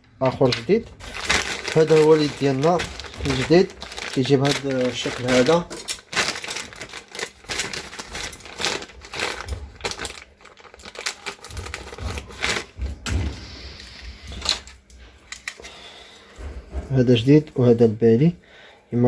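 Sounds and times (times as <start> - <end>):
plastic parts clicking and knocking: 0.1 - 13.2
rustling: 0.4 - 12.8.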